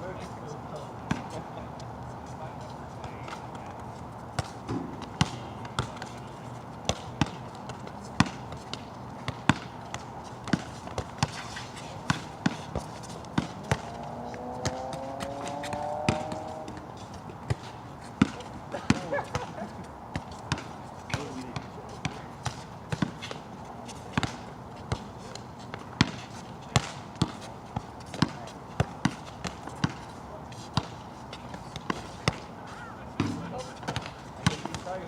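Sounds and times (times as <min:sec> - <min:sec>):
basketball bouncing on wet court: 0:06.9 - 0:11.3, 0:12.1 - 0:14.0, 0:14.6 - 0:16.8, 0:18.2 - 0:19.5, 0:20.4 - 0:23.2, 0:26.0 - 0:26.2, 0:26.8 - 0:27.4, 0:28.1 - 0:30.0, 0:33.2 - 0:34.9.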